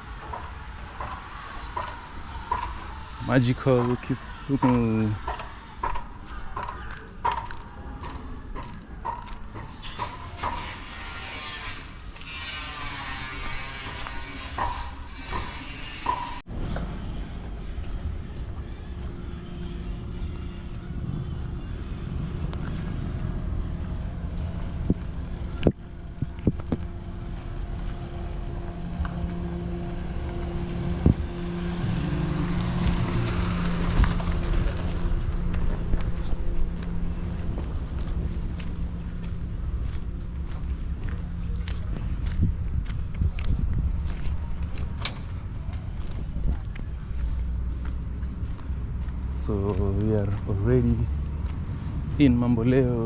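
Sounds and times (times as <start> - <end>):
vehicle rumbling and rattling: 0.0 - 53.0
wind on microphone: 20.2 - 39.8, 41.2 - 47.5.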